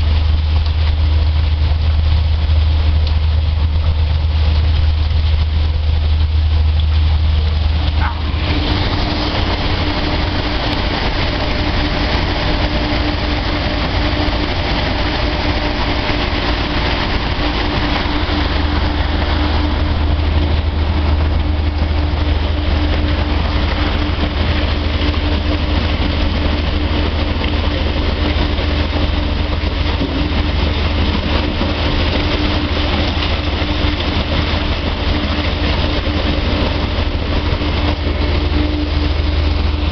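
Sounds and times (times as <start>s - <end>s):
heavy machinery low hum: 0.0s - 39.9s
rushing noise: 0.0s - 39.9s
steady humming tone: 0.0s - 39.9s.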